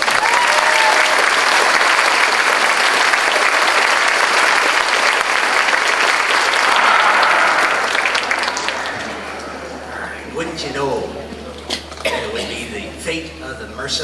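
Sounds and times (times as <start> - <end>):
audience applauding: 0.0 - 10.4.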